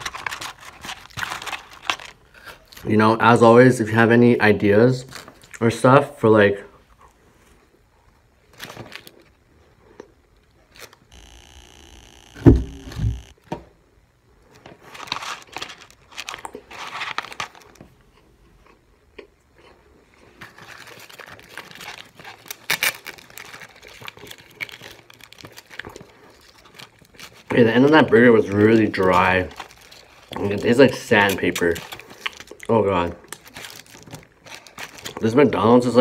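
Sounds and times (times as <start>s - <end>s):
paper wrapper crinkling: 0.0s - 3.0s, 8.5s - 9.4s, 10.6s - 13.2s, 14.6s - 17.9s, 20.4s - 35.6s
chewing: 17.4s - 27.5s.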